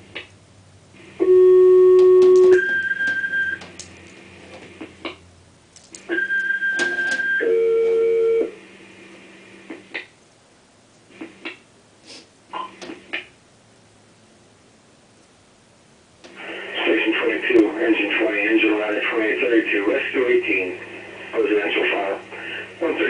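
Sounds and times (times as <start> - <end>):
electronic paging tones: 1.2 - 3.7, 6.1 - 8.5.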